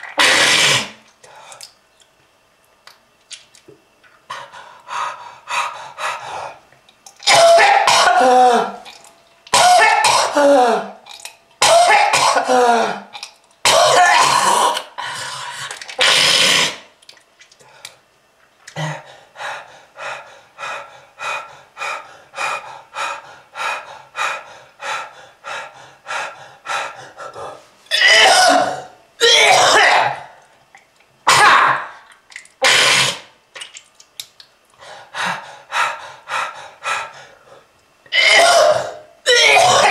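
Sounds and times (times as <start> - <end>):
person coughing hard: 7.3 - 8.8, 9.5 - 10.9, 11.6 - 13.1, 13.7 - 14.8, 27.9 - 30.3, 31.3 - 31.9, 38.1 - 39.9.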